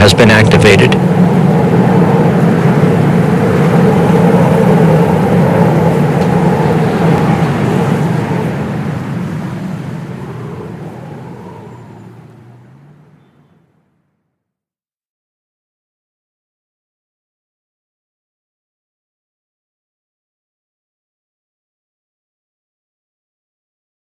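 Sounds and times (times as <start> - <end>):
loud dense rumbling: 0.0 - 13.2.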